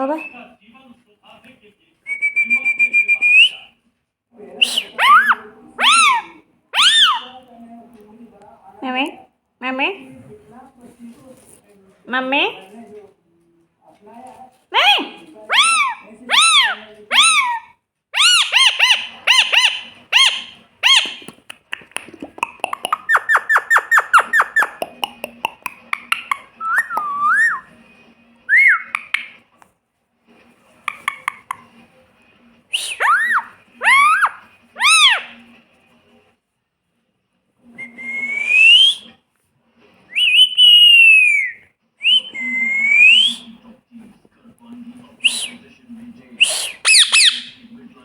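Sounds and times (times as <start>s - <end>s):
parrot squawking and chirping: 4.6s - 7.4s, 14.7s - 21.4s, 22.4s - 27.7s, 28.5s - 29.4s, 30.9s - 31.7s, 32.7s - 35.4s, 40.2s - 41.6s, 46.4s - 47.6s.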